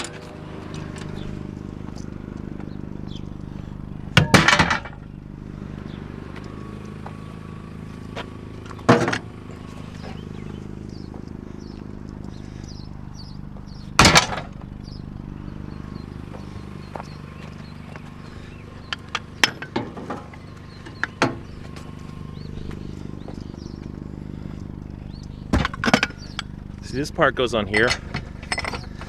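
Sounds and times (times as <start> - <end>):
steady low hum: 0.0 - 29.0
scrap metal clanking: 18.3 - 21.9, 27.7 - 29.0
metal knocks and clinks: 18.9 - 21.4, 25.5 - 26.5, 27.7 - 29.0.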